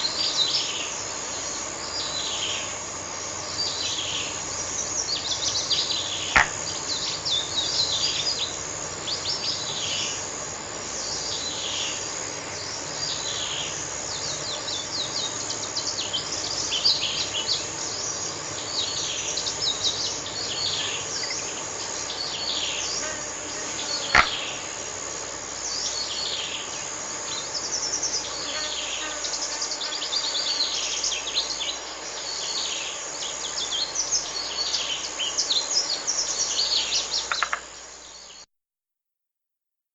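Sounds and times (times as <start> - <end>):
insect drone: 0.0 - 38.5
sharp clicks: 6.4 - 6.6, 24.2 - 24.4
birds chirping and trilling: 23.8 - 24.8.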